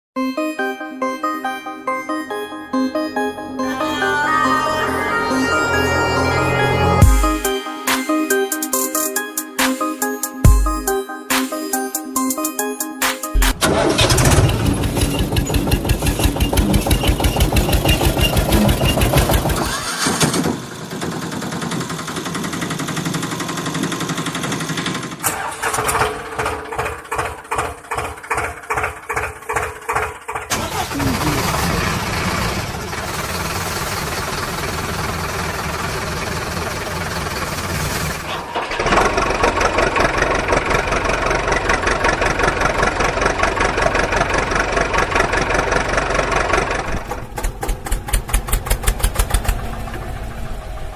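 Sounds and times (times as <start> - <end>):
vehicle engine running and idling: 13.4 - 50.9.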